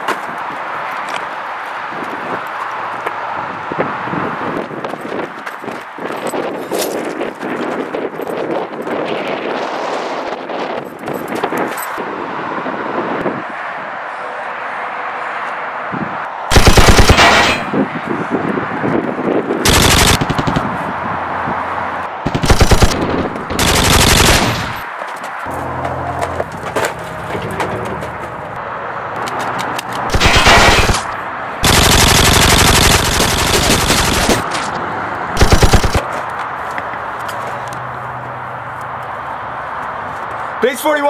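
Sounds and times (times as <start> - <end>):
machine-gun fire bursts: 16.5 - 17.7, 19.6 - 20.7, 22.2 - 24.8, 30.1 - 34.4, 35.4 - 36.0.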